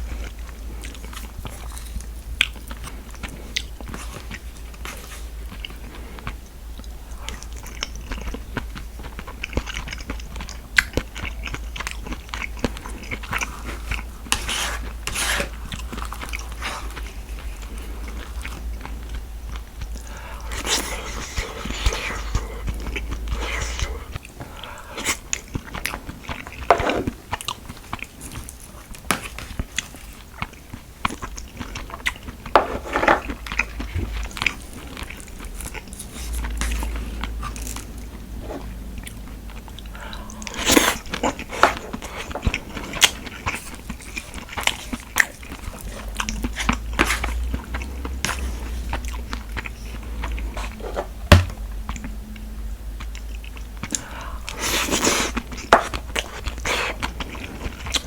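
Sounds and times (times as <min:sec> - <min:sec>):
person chewing food: 0:00.0 - 0:58.0
sharp knock: 0:51.3 - 0:51.6.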